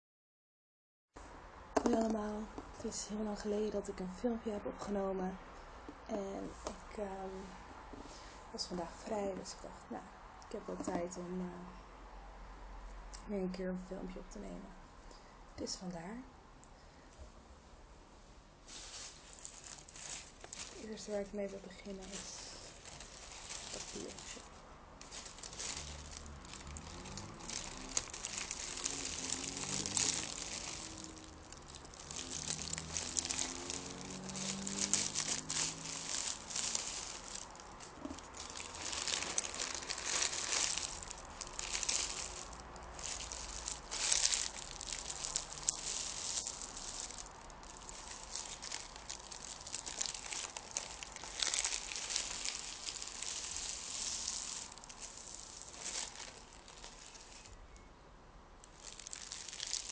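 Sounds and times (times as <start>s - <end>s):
paper crinkling and rustling: 18.7s - 57.6s, 58.6s - 59.9s.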